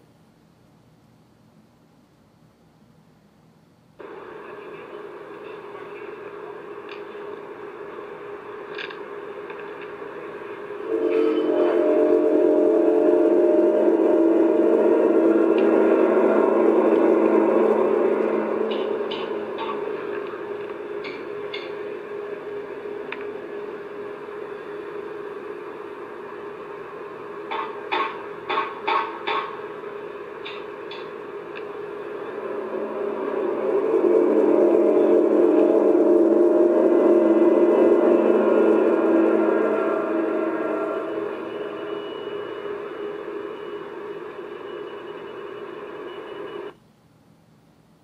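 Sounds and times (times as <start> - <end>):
low droning hum with hiss: 0.0 - 48.0
loud sustained pitched drone: 10.8 - 27.7, 30.9 - 46.7.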